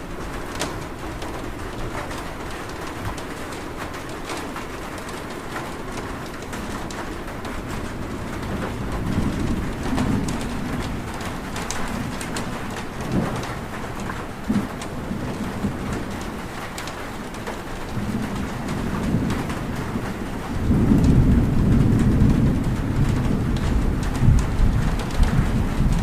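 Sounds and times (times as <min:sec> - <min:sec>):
steady rain: 0:00.0 - 0:26.0
low thunder: 0:06.0 - 0:26.0.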